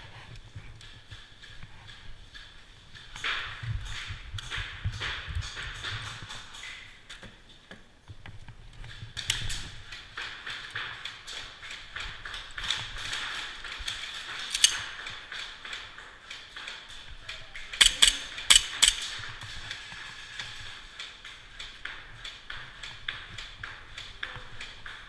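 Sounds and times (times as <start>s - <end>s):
airsoft guns firing: 17.8s - 19.2s.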